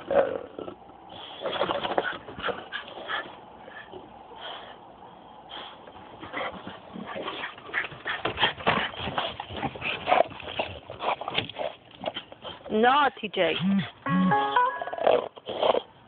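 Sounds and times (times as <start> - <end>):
dog clicking and scuffling: 5.9 - 12.8.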